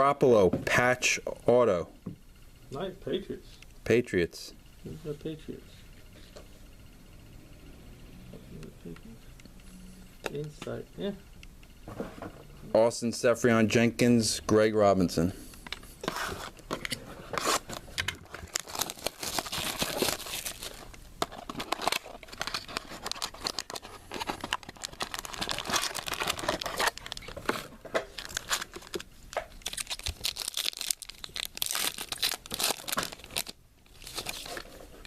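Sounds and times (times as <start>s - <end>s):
wrapper crinkling and tearing: 17.4s - 34.8s.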